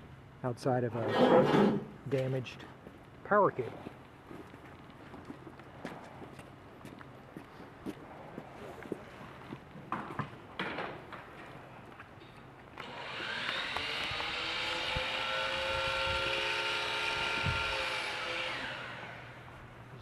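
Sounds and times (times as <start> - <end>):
motor whining hum: 12.8 - 20.0.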